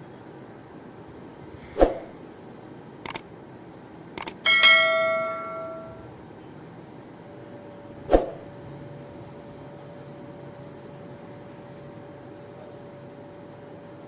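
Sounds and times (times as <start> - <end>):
light clicks: 3.0 - 3.2, 4.2 - 4.4
metal vessel ringing: 4.5 - 6.1.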